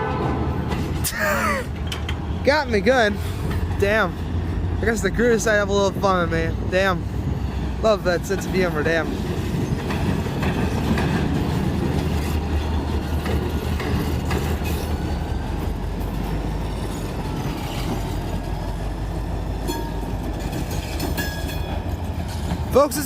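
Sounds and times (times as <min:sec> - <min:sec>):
freight train rumbling: 0:00.0 - 0:23.0
wheel clicks over rail joints: 0:09.5 - 0:18.1.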